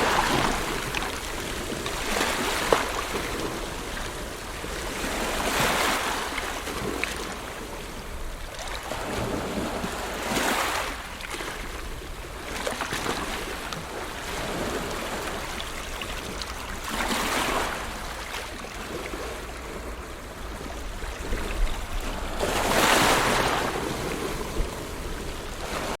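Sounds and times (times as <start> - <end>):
ocean waves breaking: 0.0 - 26.0
wind rumble on microphone: 0.0 - 26.0.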